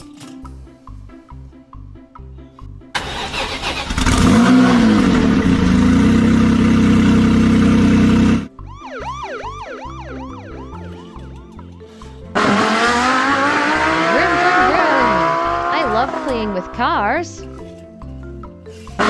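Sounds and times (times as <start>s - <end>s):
light plinking background music: 0.0s - 3.1s, 8.5s - 19.0s
car engine starting and revving: 2.9s - 8.6s, 12.1s - 17.8s
wailing siren: 8.5s - 16.7s.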